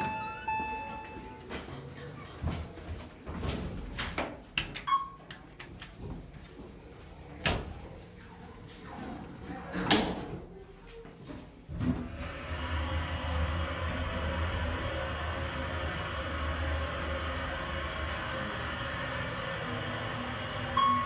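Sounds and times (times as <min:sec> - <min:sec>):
elevator doors sliding: 0:11.8 - 0:21.0.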